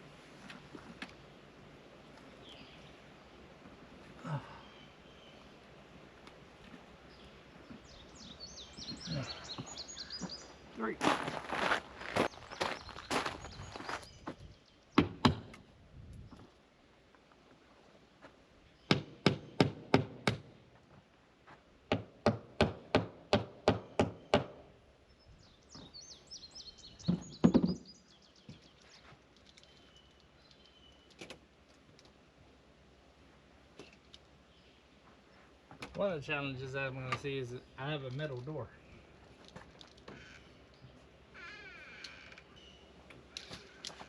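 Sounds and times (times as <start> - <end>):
faint bird chirps: 7.1 - 11.0.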